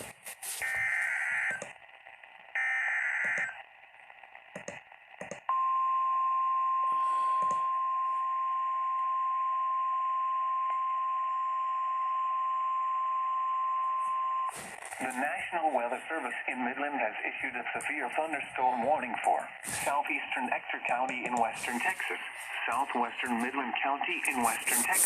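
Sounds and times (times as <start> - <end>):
radio hiss: 0.0 - 1.7, 14.5 - 25.0
steady warning alarm tone: 0.6 - 1.6, 2.6 - 3.5.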